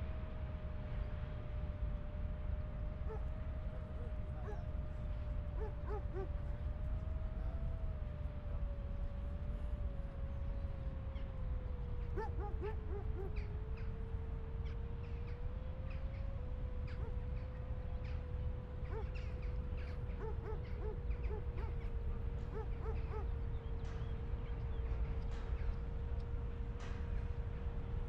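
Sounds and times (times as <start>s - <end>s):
faint continuous hum: 0.0s - 28.0s
birds calling: 3.1s - 6.9s, 11.9s - 14.1s, 14.7s - 25.9s.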